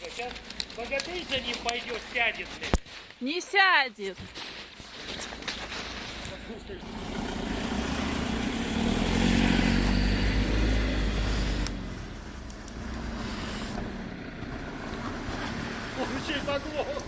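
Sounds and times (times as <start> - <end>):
engine revving hard: 6.8 - 16.7.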